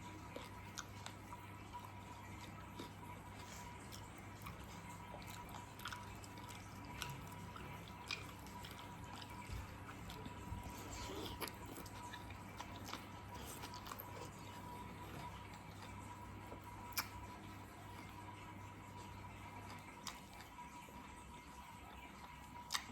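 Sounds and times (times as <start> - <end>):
low steady hum: 0.0 - 22.9
chewing and utensil clicks: 0.2 - 16.0, 16.9 - 17.2, 22.7 - 22.9.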